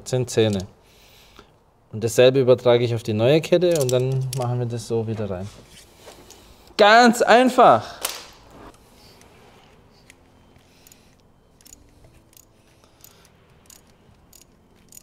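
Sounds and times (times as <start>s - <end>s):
small metal parts clicking: 3.7s - 4.5s, 10.0s - 15.0s.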